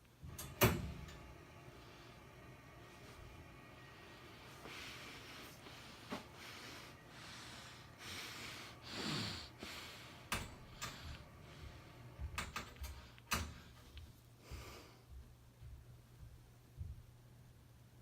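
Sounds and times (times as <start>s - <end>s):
soft breathing: 3.8s - 12.2s, 12.9s - 15.4s.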